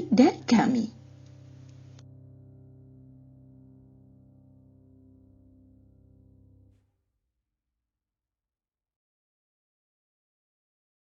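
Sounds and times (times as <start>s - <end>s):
soft held music chord: 0.0s - 6.8s.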